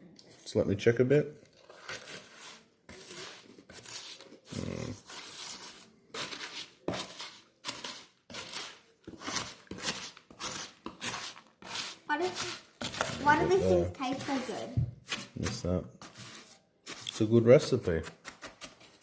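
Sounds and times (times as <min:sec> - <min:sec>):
spoon stirring crackly rice cereal: 0:01.4 - 0:19.0.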